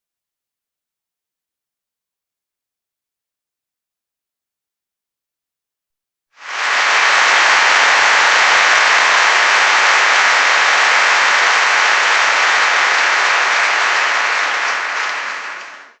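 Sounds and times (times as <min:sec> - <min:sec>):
crowd applause: 0:06.4 - 0:16.0.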